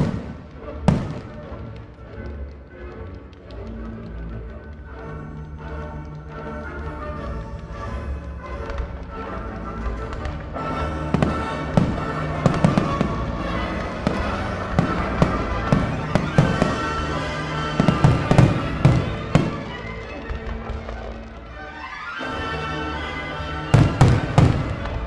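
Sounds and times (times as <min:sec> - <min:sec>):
fireworks bangs: 0:00.0 - 0:02.0, 0:10.0 - 0:21.4, 0:23.6 - 0:25.0
music: 0:00.0 - 0:25.0.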